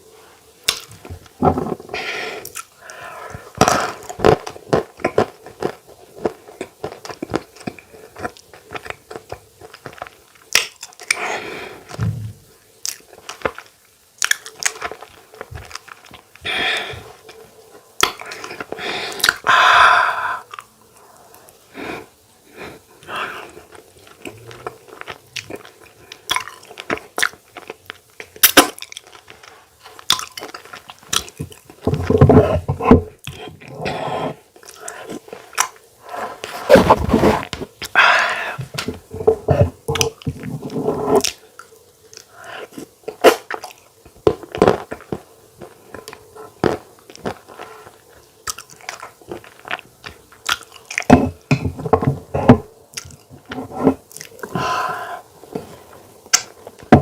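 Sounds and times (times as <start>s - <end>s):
person chewing and smacking: 2.4s - 11.2s, 12.8s - 17.4s, 23.4s - 33.8s, 41.2s - 51.6s, 52.8s - 54.5s.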